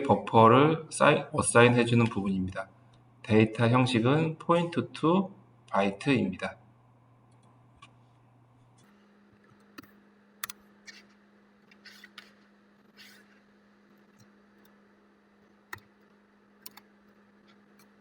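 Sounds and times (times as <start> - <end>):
steady low hum: 0.0 - 18.0
keyboard and mouse clicks: 9.4 - 13.3, 15.5 - 18.0.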